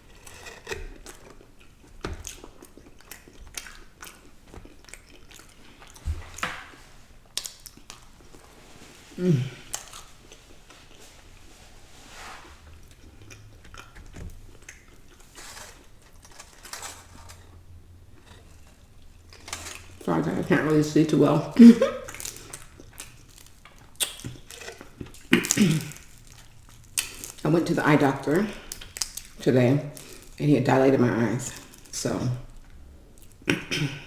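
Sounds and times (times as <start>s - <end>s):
chewing and biting food: 0.0s - 8.9s, 9.5s - 11.5s, 12.4s - 20.4s, 21.9s - 27.5s, 28.3s - 30.4s
wet mouth clicks and smacks: 24.0s - 24.5s.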